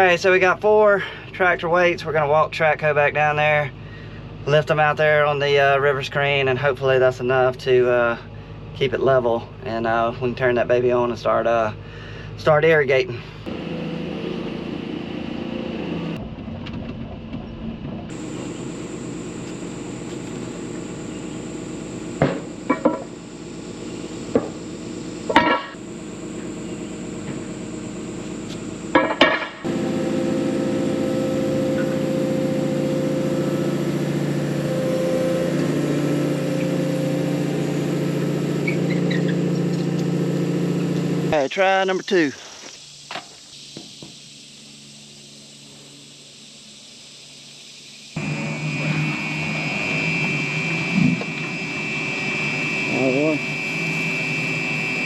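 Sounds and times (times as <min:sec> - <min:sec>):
diesel engine running: 0:00.0 - 0:42.3, 0:48.2 - 0:55.0.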